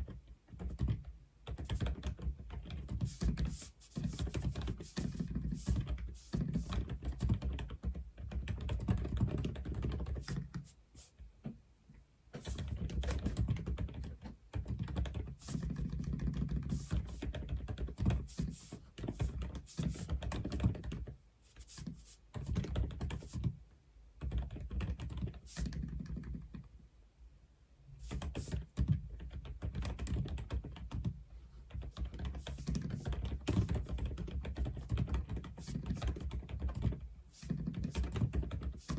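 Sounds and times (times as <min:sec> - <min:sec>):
mechanical keyboard typing: 0:00.0 - 0:10.6, 0:12.4 - 0:21.2, 0:22.3 - 0:23.5, 0:24.2 - 0:26.6, 0:28.1 - 0:38.9.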